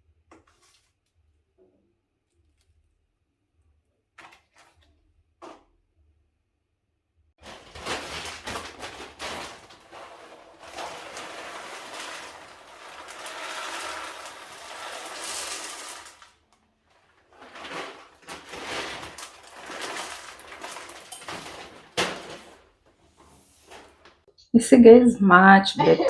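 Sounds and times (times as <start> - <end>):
household handling knocks and clicks: 7.4 - 15.3, 16.5 - 24.2.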